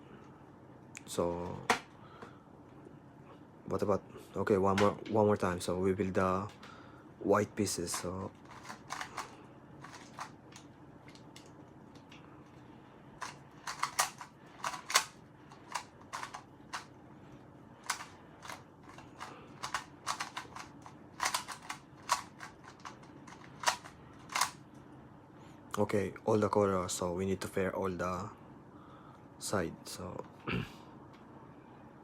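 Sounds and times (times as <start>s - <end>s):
puzzle cube layers clicking: 19.6s - 24.5s.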